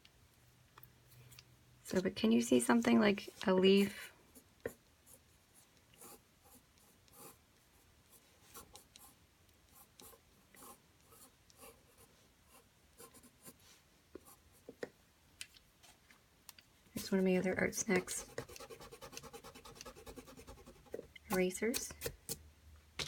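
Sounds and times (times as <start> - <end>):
marker scratching on paper: 17.0 - 22.2.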